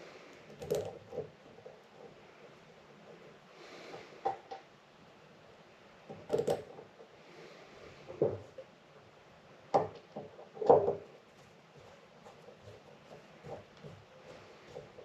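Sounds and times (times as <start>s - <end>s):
small parts knocking and clicking: 0.4s - 1.8s, 6.1s - 6.9s.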